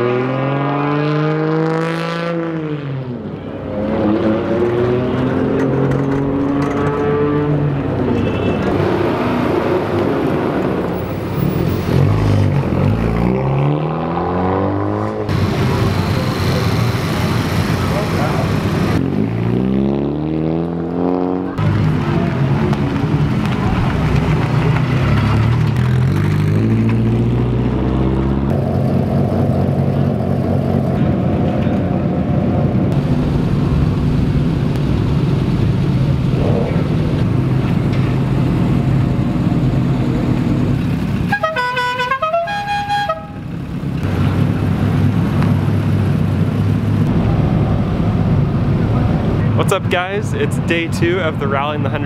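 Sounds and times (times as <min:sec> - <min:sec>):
car horn tooting: 0:08.1 - 0:08.8, 0:41.3 - 0:43.4.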